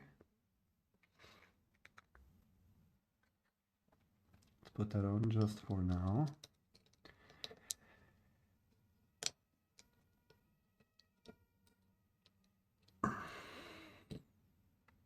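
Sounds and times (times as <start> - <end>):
small tools clicking and tapping: 4.3 - 8.0, 9.2 - 13.0.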